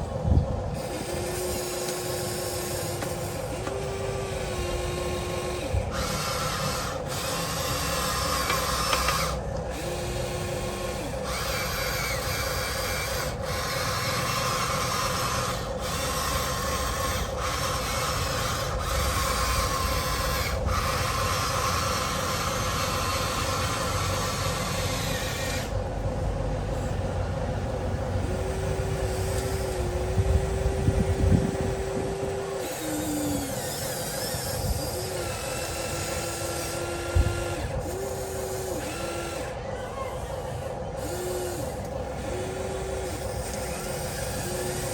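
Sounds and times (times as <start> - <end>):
higher motor tones: 0.0 - 44.9
model vehicle motors whirring: 0.0 - 44.9
clunks: 0.8 - 25.8.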